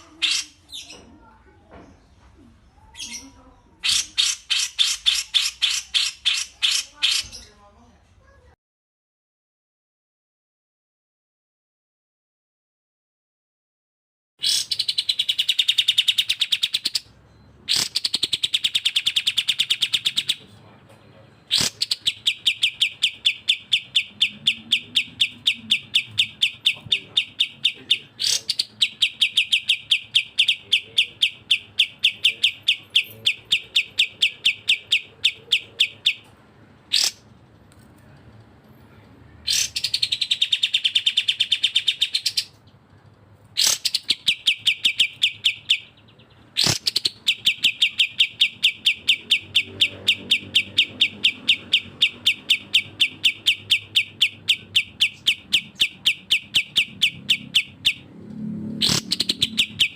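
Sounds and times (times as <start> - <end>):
songbird repeating sharp notes: 14.4 - 20.5, 21.2 - 36.3, 36.9 - 37.3, 39.4 - 42.6, 43.6 - 58.1, 58.8 - 59.9.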